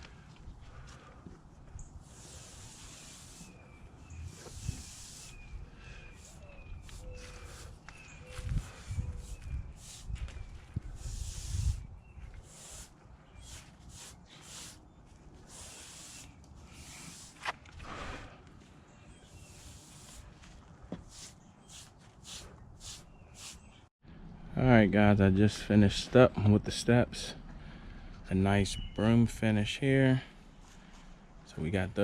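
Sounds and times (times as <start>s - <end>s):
broom scratching concrete: 2.0s - 7.8s, 8.5s - 10.2s, 10.9s - 17.6s, 19.2s - 20.4s, 21.0s - 23.8s.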